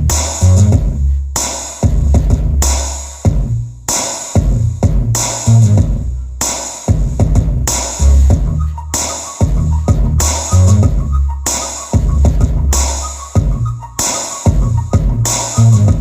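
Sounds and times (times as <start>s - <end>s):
electronic dance music: 7.8s - 16.0s.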